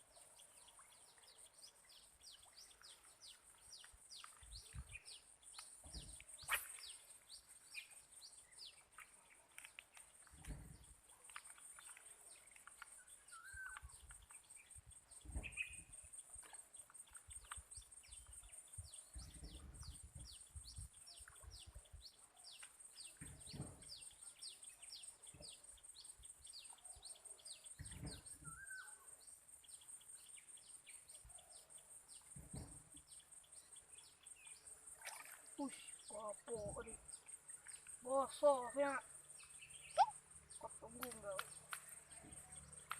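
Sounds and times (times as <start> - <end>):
birds calling: 31.3 - 42.9.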